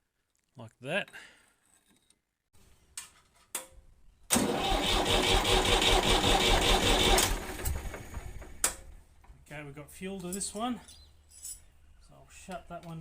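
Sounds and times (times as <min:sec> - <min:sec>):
diesel engine cranking on starter: 0:04.3 - 0:08.8.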